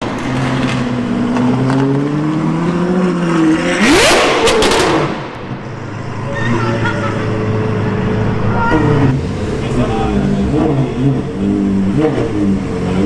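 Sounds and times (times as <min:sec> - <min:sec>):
car engine accelerating: 0:00.0 - 0:13.0
exhaust cracks: 0:03.8 - 0:05.5.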